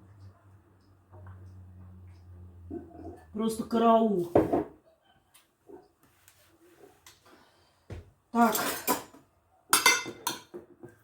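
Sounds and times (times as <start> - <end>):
dishes and utensils clattering: 8.4 - 11.0.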